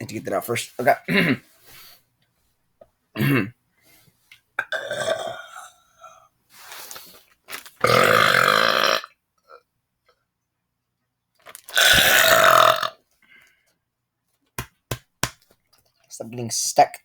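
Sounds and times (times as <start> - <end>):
man burping: 1.1 - 1.4, 3.2 - 3.6, 4.6 - 6.2, 7.8 - 9.1, 11.8 - 13.0.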